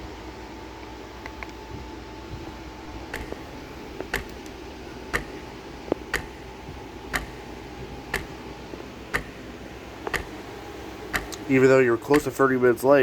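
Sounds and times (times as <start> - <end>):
clock ticking: 3.1 - 6.5, 7.1 - 7.5, 8.1 - 8.4, 9.1 - 9.4, 10.1 - 10.4, 11.1 - 11.4.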